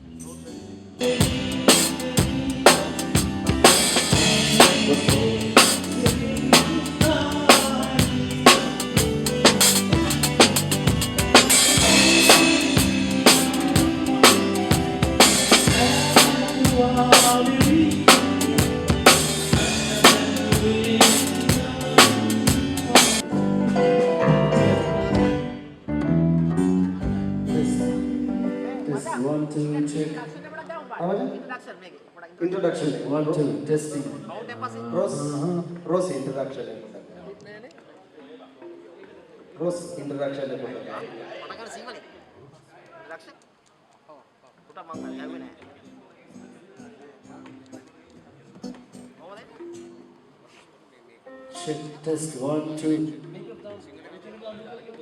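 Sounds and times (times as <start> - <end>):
drum kit hits: 1.0 - 25.6
band playing a groove: 1.0 - 28.7
held instrumental notes: 1.0 - 29.1.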